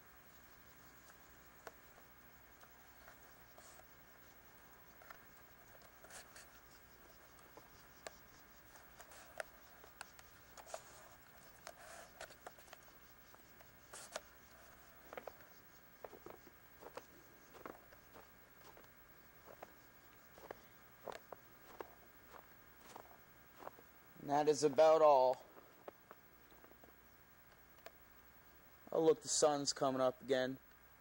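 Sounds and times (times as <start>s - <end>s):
faint steady hiss: 0.0s - 31.0s.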